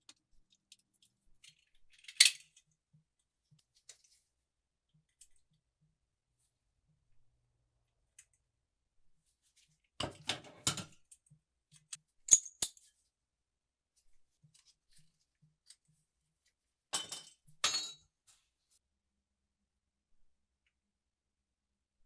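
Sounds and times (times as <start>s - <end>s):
small hard parts clinking: 12.3s - 12.8s.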